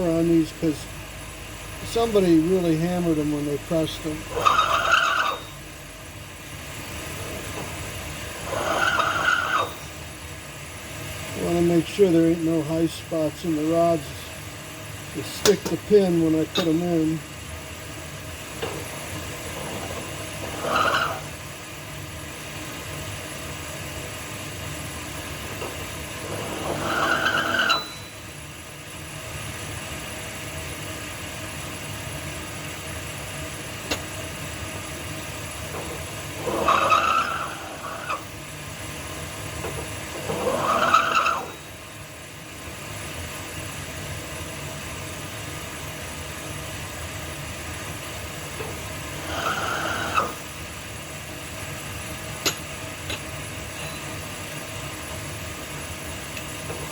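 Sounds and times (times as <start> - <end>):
cutter squealing against steel: 4.3 - 5.6, 8.4 - 9.9, 19.6 - 21.4, 26.2 - 28.2, 35.8 - 38.3, 40.2 - 41.8, 49.2 - 50.4, 53.8 - 54.1.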